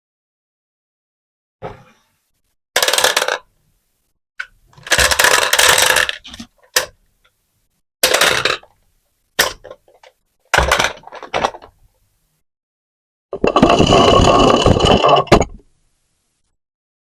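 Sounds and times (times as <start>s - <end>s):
marbles rattling along marble run: 2.8s - 3.5s, 4.8s - 6.2s.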